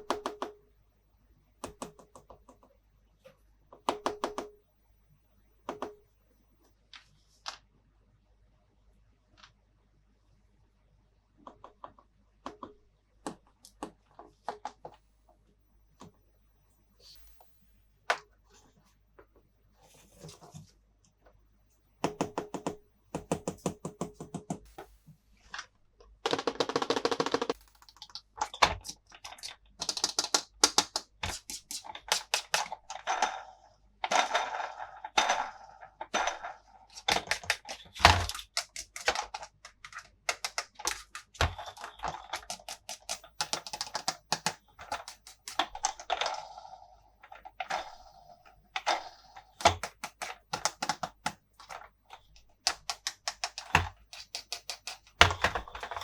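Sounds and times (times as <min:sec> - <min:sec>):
plastic toy pieces clicking: 0:26.3 - 0:46.6, 0:48.8 - 0:56.0.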